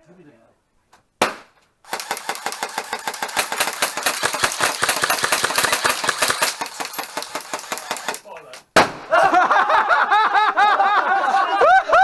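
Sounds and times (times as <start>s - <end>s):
sharp crack: 1.2s - 9.2s
rapid airsoft gunfire clatter: 1.9s - 8.4s.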